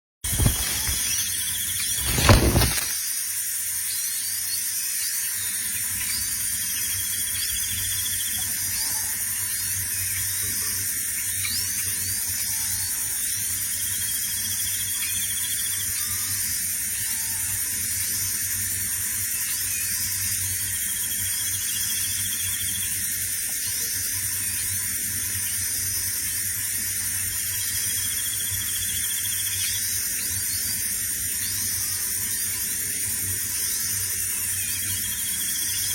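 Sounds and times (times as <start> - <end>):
faint chirps: 0.3 - 3.0
high insect-like drone: 0.3 - 35.9
small bird buzzy trill: 0.3 - 35.9.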